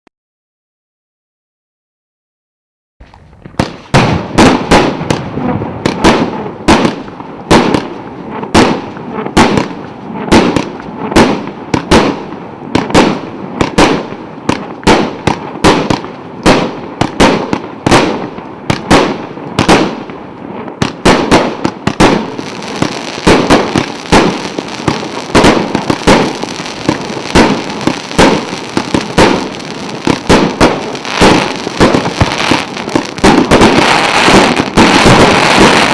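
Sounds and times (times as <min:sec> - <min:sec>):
firework cake sharp reports: 0:20.9 - 0:35.9.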